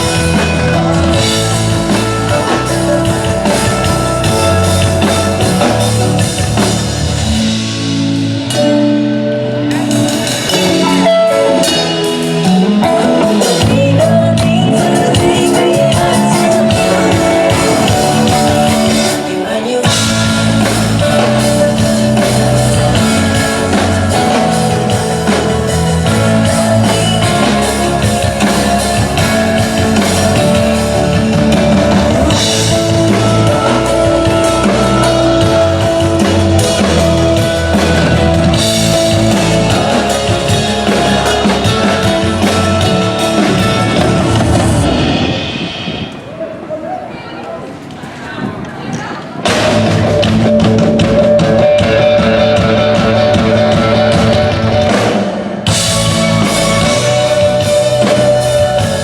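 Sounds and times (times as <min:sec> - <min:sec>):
bass guitar: 0:00.0 - 0:46.0, 0:49.5 - 0:59.0
electric guitar: 0:00.0 - 0:46.3, 0:49.4 - 0:59.0
drum kit: 0:00.0 - 0:46.7, 0:49.4 - 0:59.0
person singing: 0:08.5 - 0:45.6, 0:49.7 - 0:55.1, 0:55.7 - 0:59.0.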